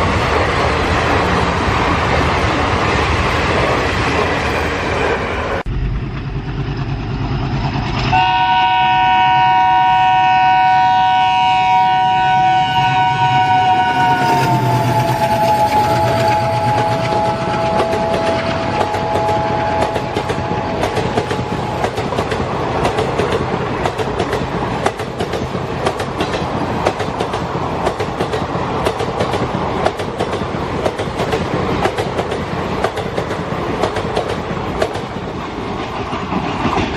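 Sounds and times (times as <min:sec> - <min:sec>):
two-note train horn: 0:08.1 - 0:20.8
train wheels clickety-clack: 0:14.0 - 0:36.9.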